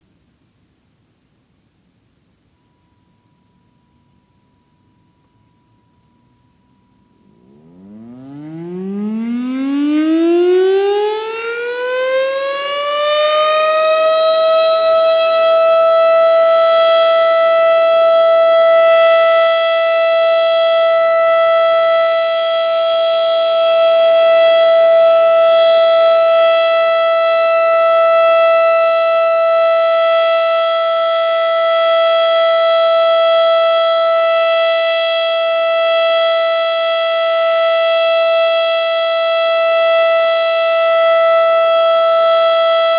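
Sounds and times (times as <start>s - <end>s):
mechanical warning siren: 2.6s - 42.9s.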